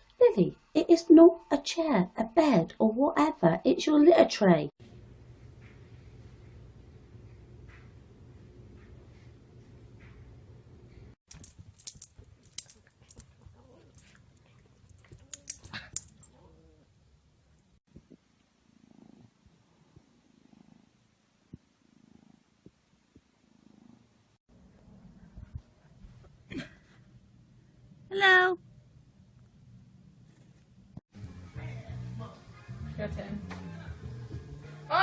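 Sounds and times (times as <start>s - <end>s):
kitten purring: 18.0s - 24.4s.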